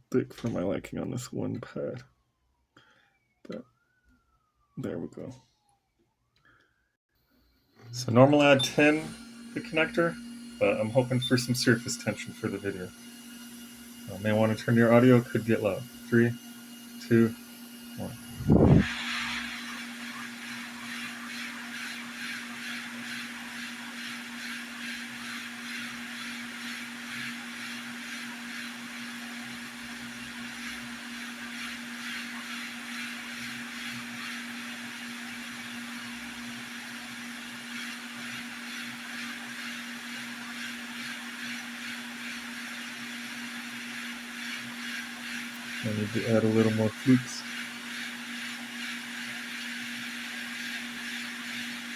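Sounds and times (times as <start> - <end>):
fan hum: 7.8 - 37.4, 39.5 - 51.9
hot air blower rushing: 8.0 - 51.9.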